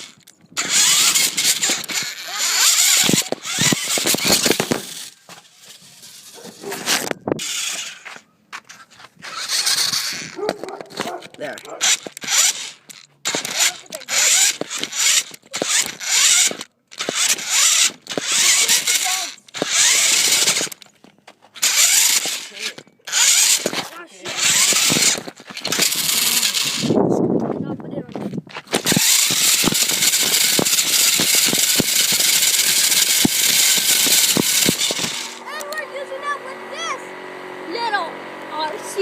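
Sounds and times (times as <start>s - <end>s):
rc car motor whirring: 0.0s - 8.2s, 9.2s - 20.9s, 21.6s - 27.0s, 28.6s - 37.1s, 37.7s - 39.0s
knocks and rattles from bumps: 0.0s - 26.9s.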